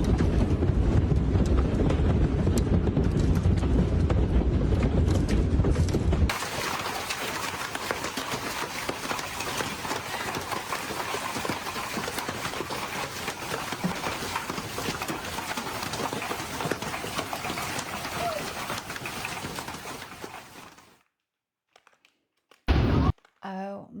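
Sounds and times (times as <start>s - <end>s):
hail striking hard surfaces: 6.3s - 20.9s.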